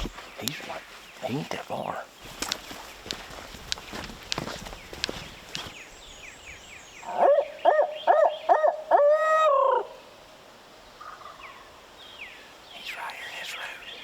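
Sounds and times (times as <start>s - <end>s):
faint songbird chirps: 0.0s - 10.1s, 10.8s - 14.0s
light clicks: 2.3s - 5.8s
owl hooting: 7.0s - 10.1s.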